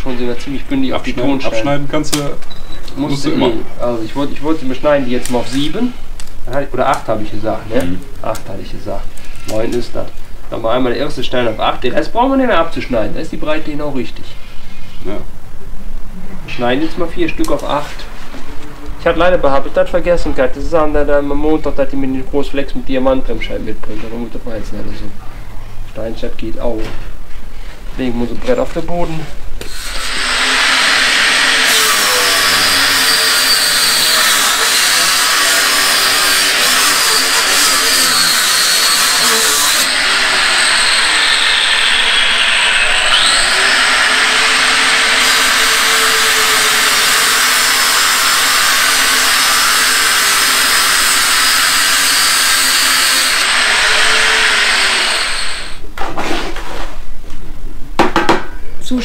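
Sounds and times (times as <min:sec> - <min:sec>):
power cutter grinding brick: 0:29.6 - 0:55.8.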